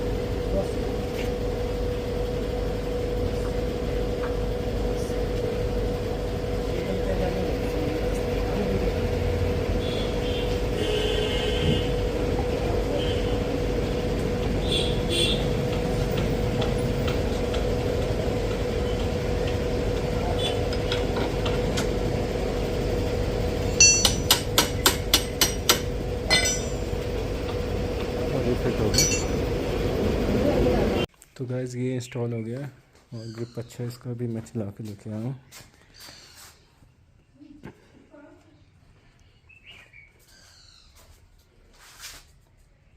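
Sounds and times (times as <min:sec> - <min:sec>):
steady hum: 0:00.0 - 0:31.1
workshop noise: 0:00.0 - 0:31.1, 0:31.8 - 0:36.9
sharp knocks of tools: 0:23.8 - 0:26.9, 0:28.9 - 0:29.4.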